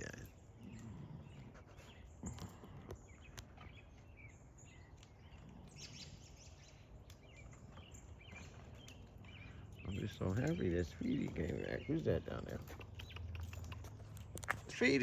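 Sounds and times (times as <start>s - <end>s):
bird chirps: 0.0s - 15.0s.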